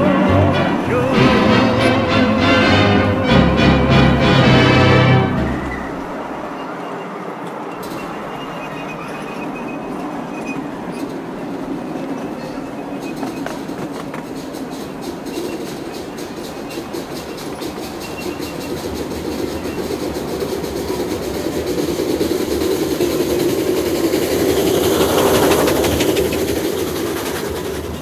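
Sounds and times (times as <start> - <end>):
train rumble: 0.0 - 28.0
train wheels clicking over rail joints: 5.4 - 28.0.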